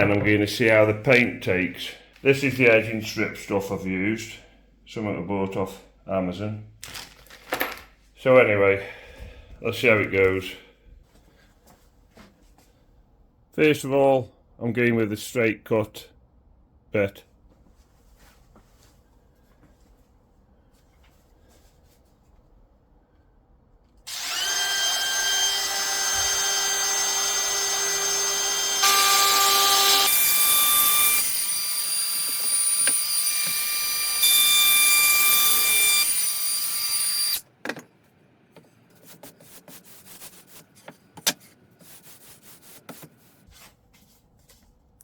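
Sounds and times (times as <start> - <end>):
router motor whining: 24.1 - 37.4.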